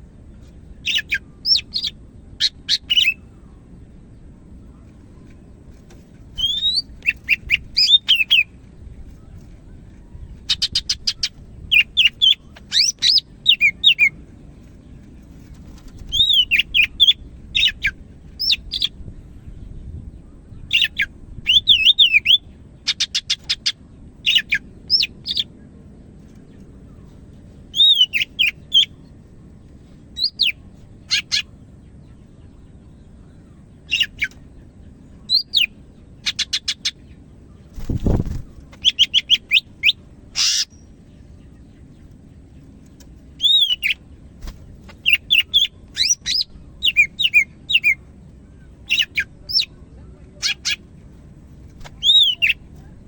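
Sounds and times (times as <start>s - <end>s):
bird singing whistles and trills: 0.8s - 3.3s, 6.4s - 8.5s, 10.5s - 14.2s, 16.0s - 19.0s, 20.2s - 25.5s, 27.7s - 29.0s, 33.4s - 34.4s, 35.2s - 37.0s, 37.8s - 41.0s, 43.4s - 44.0s, 45.0s - 48.0s, 52.0s - 52.6s.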